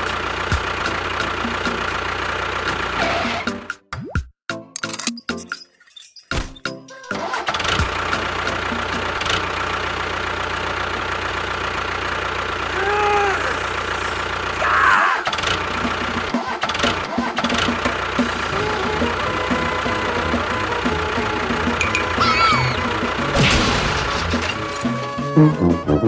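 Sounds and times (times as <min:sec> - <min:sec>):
motor running: 0:07.9 - 0:14.6, 0:17.5 - 0:26.0
short falling squeal: 0:21.8 - 0:26.0.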